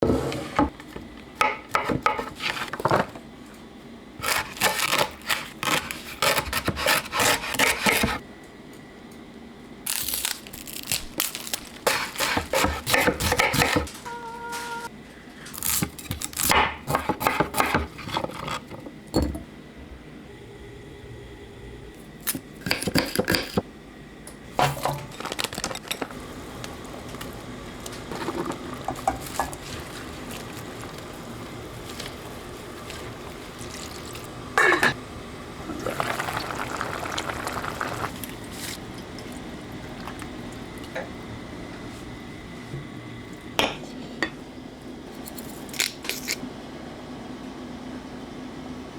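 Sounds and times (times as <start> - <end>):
steady low hum: 16.7 - 45.7
pots and utensils clinking: 24.5 - 35.0
liquid pouring: 26.1 - 34.6, 35.6 - 41.0.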